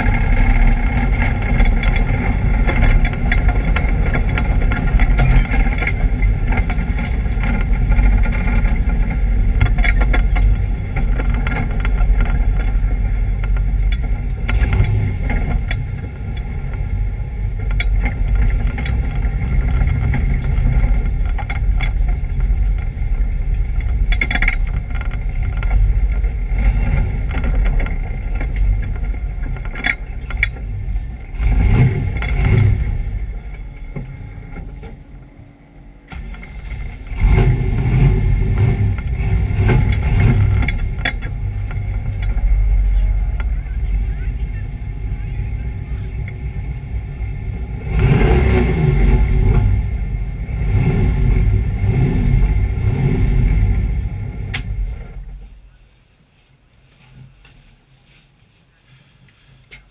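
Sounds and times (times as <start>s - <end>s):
sharp engine cracks: 0.0s - 46.5s
race car engine misfiring: 0.0s - 55.6s.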